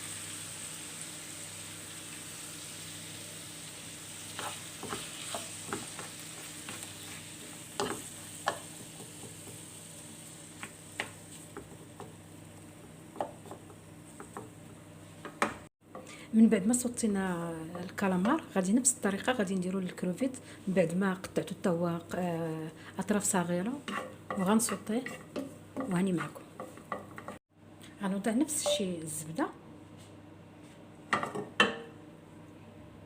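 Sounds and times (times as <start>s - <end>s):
calamari sizzling in a frying pan: 0.0s - 14.5s.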